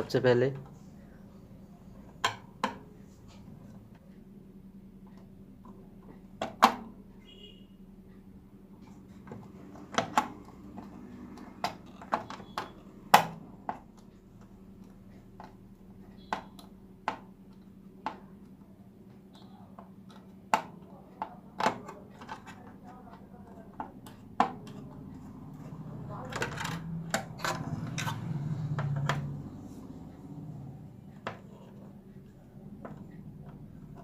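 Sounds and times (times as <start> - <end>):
faint low hum: 0.0 - 34.0
tools and parts clicking: 26.2 - 29.4.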